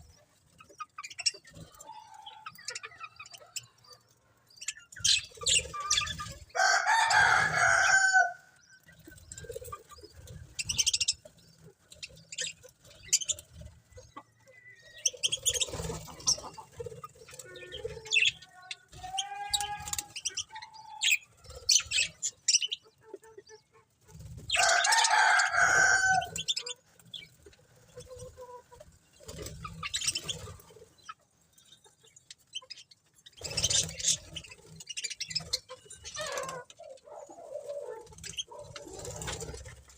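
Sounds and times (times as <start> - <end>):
budgerigars chirping: 4.6 - 6.6, 9.1 - 18.4, 19.2 - 23.8, 29.3 - 31.2, 31.8 - 39.4.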